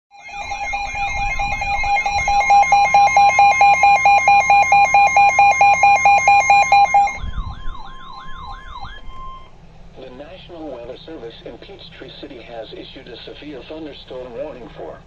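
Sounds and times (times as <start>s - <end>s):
rapid multi-pitched beeping: 0.1s - 9.5s
steady alarm tone: 0.1s - 9.6s
warbling siren-like sweep: 0.1s - 9.6s.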